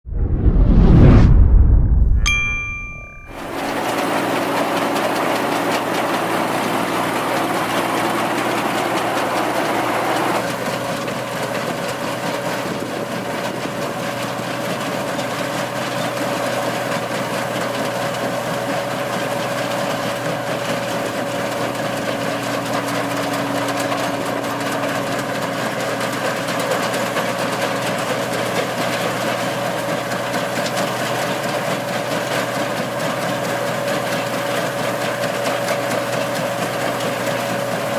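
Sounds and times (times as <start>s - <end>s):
steady whine: 0.0s - 10.5s
combine harvester engine and machinery: 3.4s - 37.9s.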